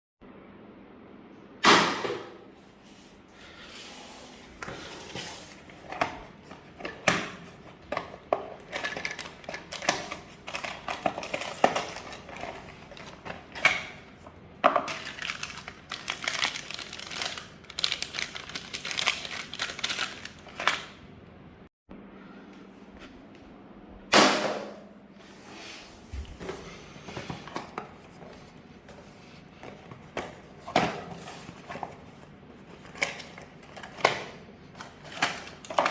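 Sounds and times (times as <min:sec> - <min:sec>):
packaging crinkling: 0:07.9 - 0:14.0, 0:14.7 - 0:21.0.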